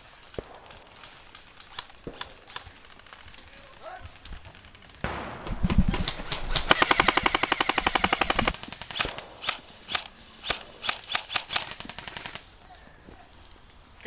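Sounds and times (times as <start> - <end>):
airsoft gun firing full-auto: 4.5 - 12.7
airsoft gun single shots: 5.0 - 12.4
short rushing noise with thump: 5.3 - 8.5.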